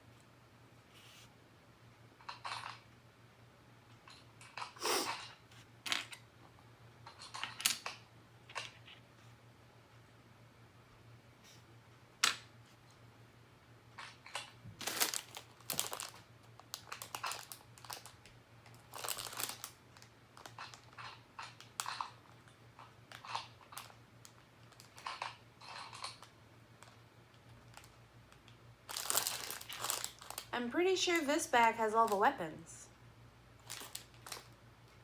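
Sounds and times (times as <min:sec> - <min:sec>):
plastic bag crinkling: 0:14.2 - 0:22.3, 0:23.1 - 0:27.0, 0:27.6 - 0:28.0, 0:28.8 - 0:32.4, 0:33.6 - 0:34.6.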